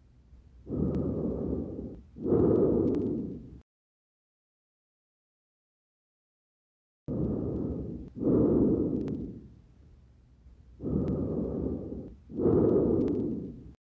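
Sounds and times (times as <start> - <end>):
breathing through stethoscope: 0.7 - 3.6, 7.1 - 9.6, 10.8 - 13.8
lung crackles: 0.7 - 3.6, 7.1 - 9.5, 10.8 - 13.8.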